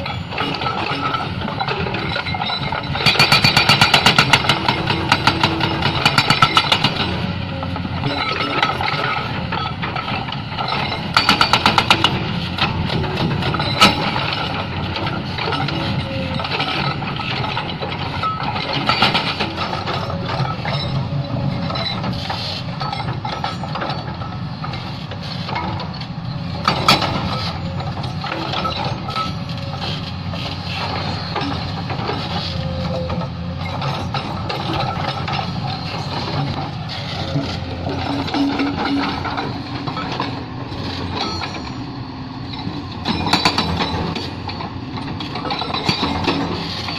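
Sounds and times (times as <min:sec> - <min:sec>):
excavator diesel engine running: 0:00.0 - 0:46.9
steel clanking on rock: 0:08.0 - 0:24.9, 0:26.6 - 0:41.8, 0:42.4 - 0:46.9.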